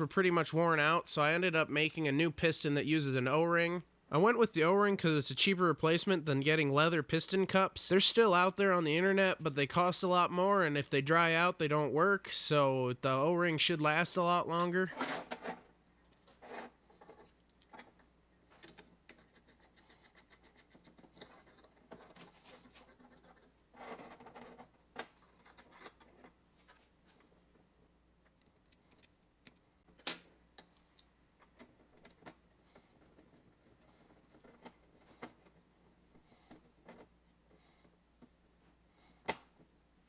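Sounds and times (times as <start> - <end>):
small metal parts clicking: 28.3 - 31.2.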